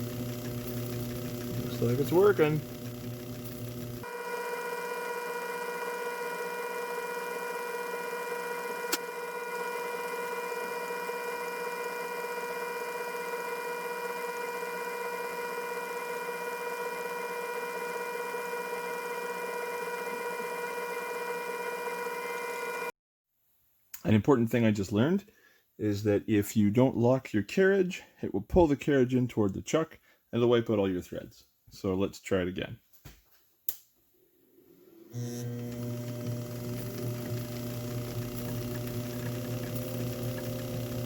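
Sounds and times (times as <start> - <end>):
lathe running with a whine: 0.0 - 22.9, 35.2 - 41.0.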